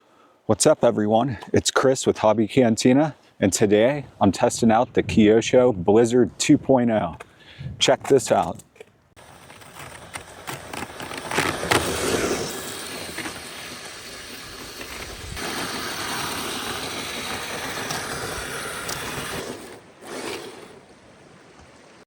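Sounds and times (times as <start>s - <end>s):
electric motor and gearbox whirring: 8.1s - 20.8s
tracks churning snow: 9.2s - 20.8s.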